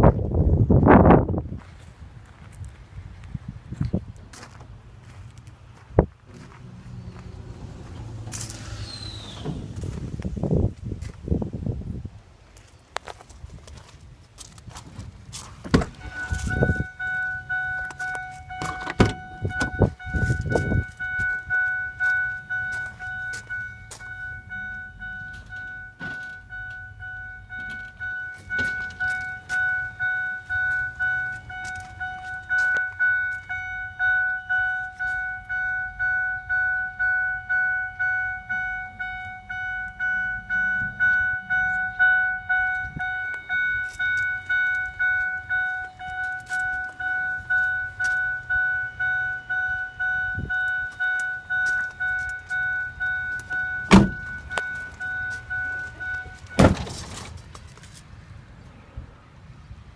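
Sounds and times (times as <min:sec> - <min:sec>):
vehicle warning chime dinging: 0:05.0 - 0:10.7, 0:15.4 - 0:58.0
knocks and clunks: 0:14.8 - 0:16.9, 0:17.8 - 0:21.4, 0:25.3 - 0:26.8, 0:27.6 - 0:29.3, 0:53.3 - 0:55.0, 0:55.9 - 0:57.8.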